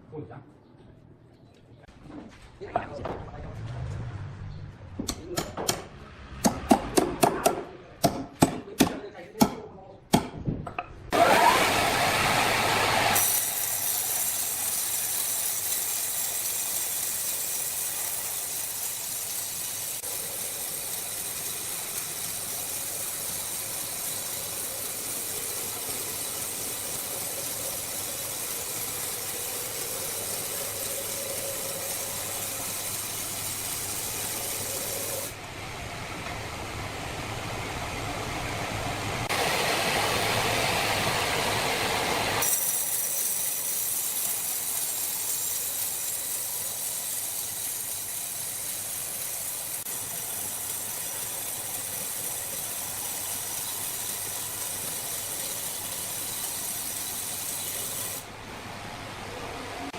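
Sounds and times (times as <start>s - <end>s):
sawmill machinery hissing: 11.1s - 58.4s.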